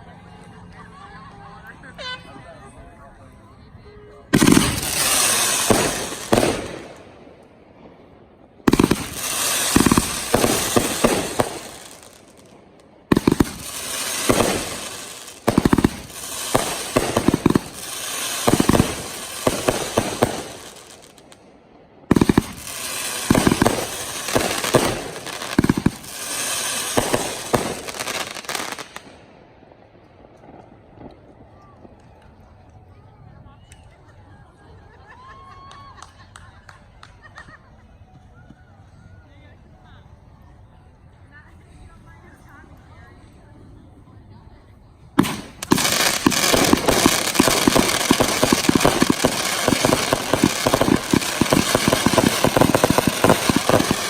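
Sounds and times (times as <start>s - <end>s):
firework bangs: 4.3s - 21.4s, 22.0s - 32.0s, 45.2s - 54.0s
firework crackling and popping: 4.3s - 21.4s, 22.0s - 32.9s, 45.2s - 54.0s.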